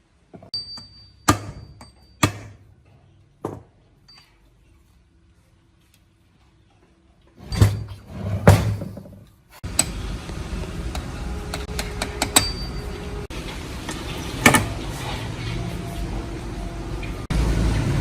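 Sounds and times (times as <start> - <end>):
machine running with clattering rattle: 9.7 - 18.0.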